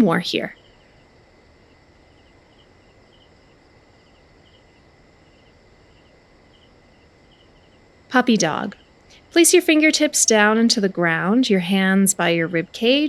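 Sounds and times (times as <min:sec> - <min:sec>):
insect chirping: 0:00.0 - 0:13.0
low hiss: 0:00.0 - 0:13.0.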